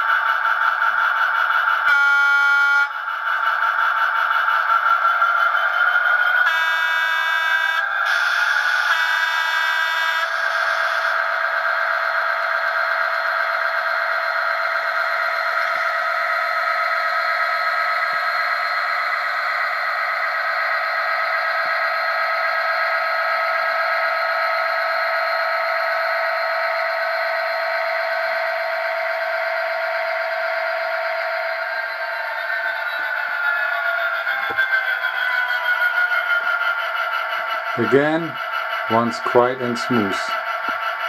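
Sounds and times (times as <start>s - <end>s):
model locomotive horn blasts: 1.9s - 3.0s, 6.5s - 11.2s
diesel engine running: 9.9s - 41.0s.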